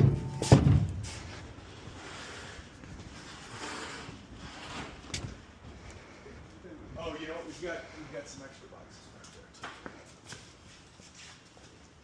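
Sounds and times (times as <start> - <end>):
boxes thumping into truck: 0.0 - 1.2
shuffling: 9.0 - 12.0.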